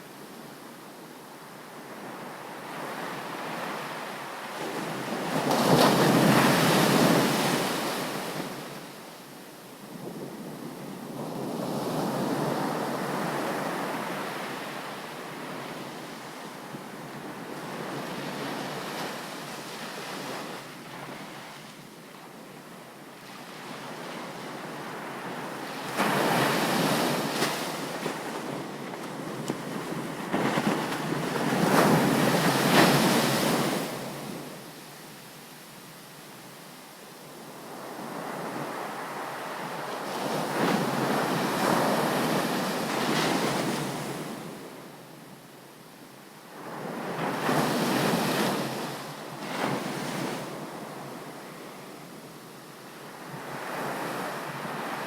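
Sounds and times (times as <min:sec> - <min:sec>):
ocean waves breaking on beach: 0:23.8 - 0:34.6.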